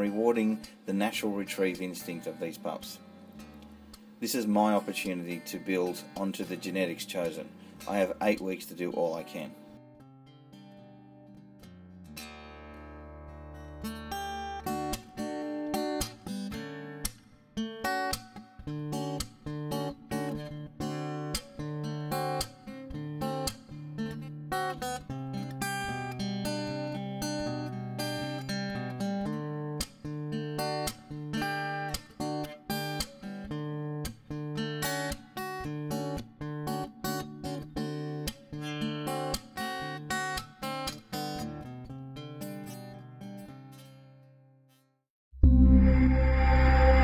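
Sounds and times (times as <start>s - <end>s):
strummed acoustic guitar: 0.0s - 44.8s.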